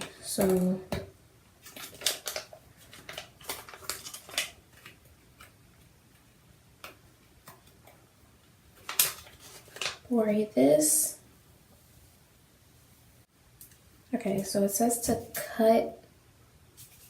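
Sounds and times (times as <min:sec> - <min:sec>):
plastic bottles clicking and tapping: 0:00.0 - 0:01.1.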